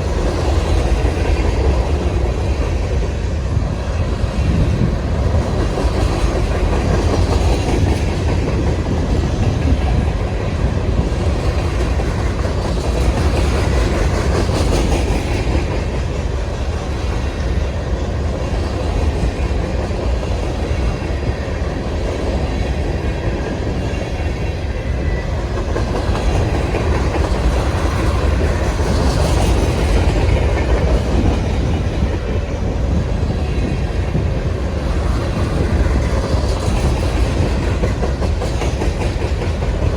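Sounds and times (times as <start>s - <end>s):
freight train rumble: 0.0s - 39.9s
wheels clacking over rails: 25.4s - 39.9s.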